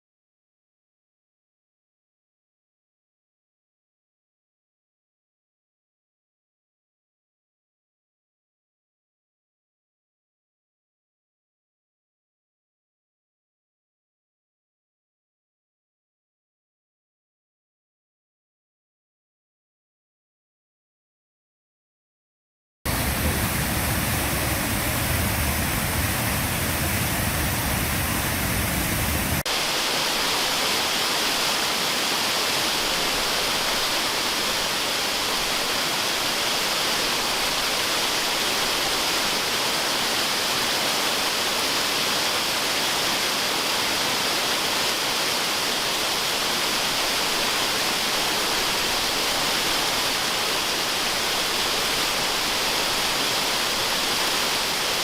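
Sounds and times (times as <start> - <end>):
waterfall rushing: 22.9 - 55.0.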